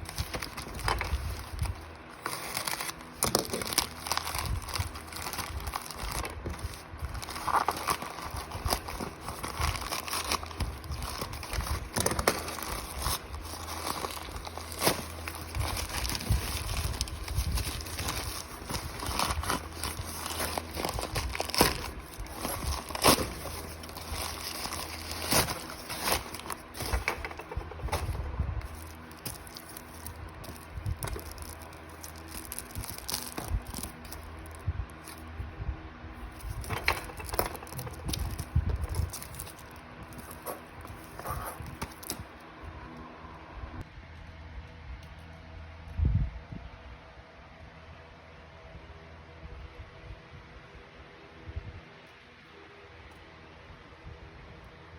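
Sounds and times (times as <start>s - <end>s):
packaging crinkling: 0.0s - 35.3s, 36.2s - 42.3s.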